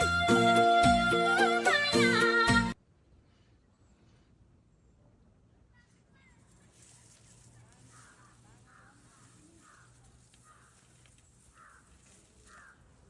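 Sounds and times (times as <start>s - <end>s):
bird calling faintly: 6.5s - 13.0s.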